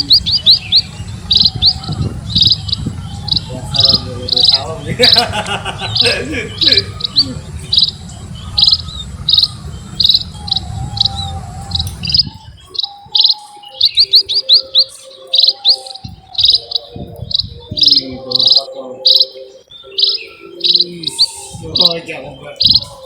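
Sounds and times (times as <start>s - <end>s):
low rumble: 0.0s - 12.7s
birds chirping: 0.0s - 23.0s.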